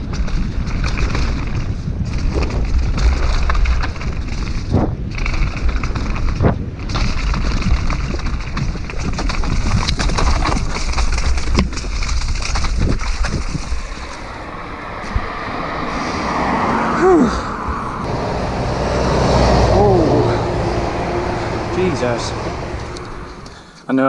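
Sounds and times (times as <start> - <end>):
bike clattering and rattling: 0.0 - 15.6
wind rushing over microphone: 0.0 - 23.6.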